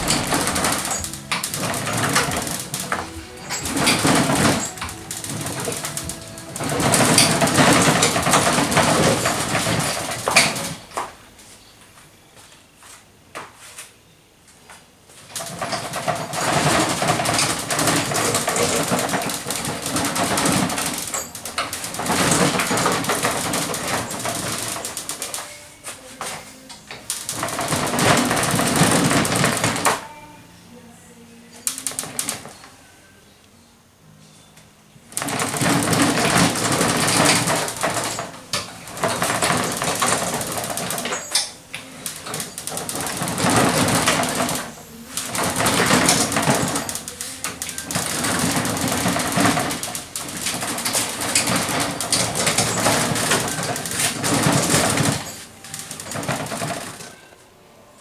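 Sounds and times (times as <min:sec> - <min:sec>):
welding arc crackling: 0:00.0 - 0:11.0.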